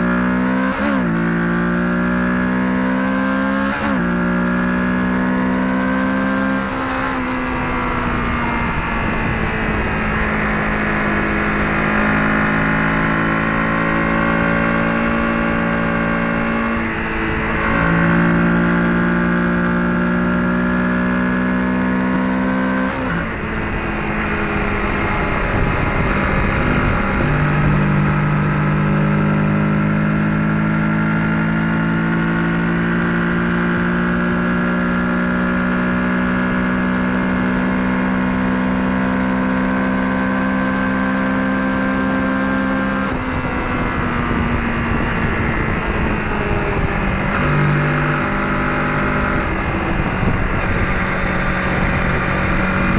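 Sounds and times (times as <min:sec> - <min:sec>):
motorcycle engine accelerating: 0:00.0 - 0:52.9
wind rush: 0:06.2 - 0:19.8, 0:22.2 - 0:29.6, 0:41.8 - 0:52.9.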